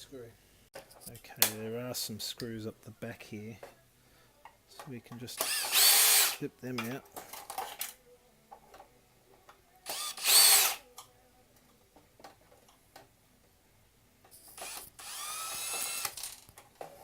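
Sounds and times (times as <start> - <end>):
cordless drill whining: 5.4 - 6.4, 9.9 - 10.8, 14.6 - 16.4.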